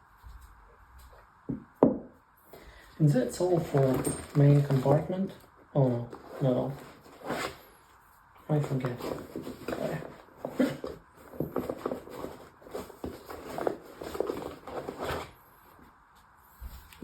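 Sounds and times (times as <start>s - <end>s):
tool bag rustling: 3.3s - 7.7s, 8.6s - 15.4s.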